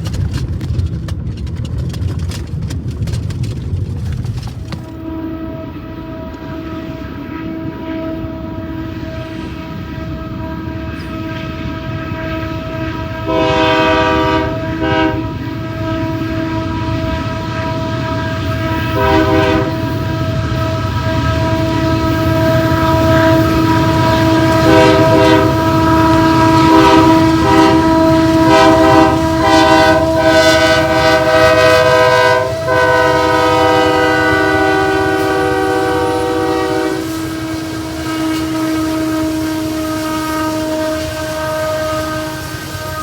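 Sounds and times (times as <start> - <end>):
wheels clicking on rail joints: 0.0 - 5.0
freight train rumble: 0.0 - 43.0
train air horn blasts: 4.9 - 43.0.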